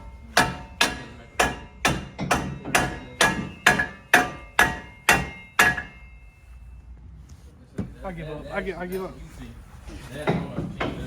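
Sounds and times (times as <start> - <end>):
hammer striking metal: 0.0 - 6.6.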